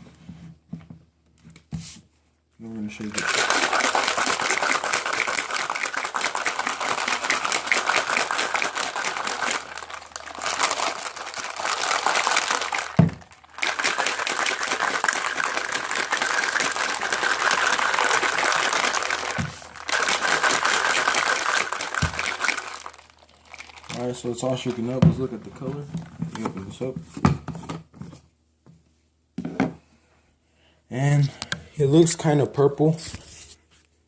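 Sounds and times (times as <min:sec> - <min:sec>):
ice rattling in shaker cup: 0:02.9 - 0:26.5.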